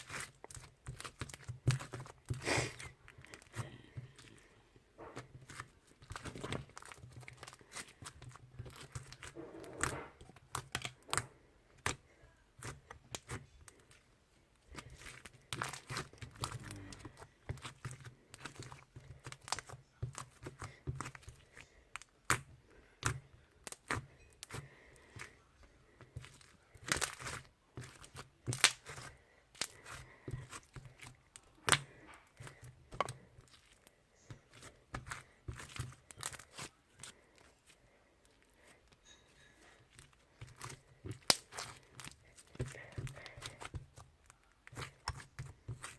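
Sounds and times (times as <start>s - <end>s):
slime squishing with wet pops: 0.0s - 39.1s, 39.8s - 45.9s.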